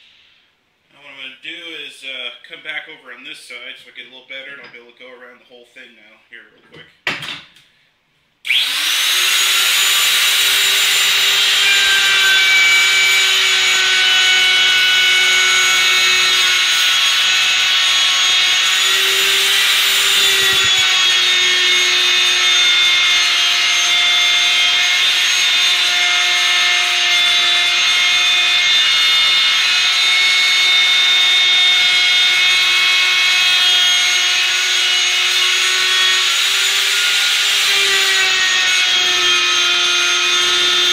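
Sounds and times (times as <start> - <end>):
router whining: 8.4 - 40.9.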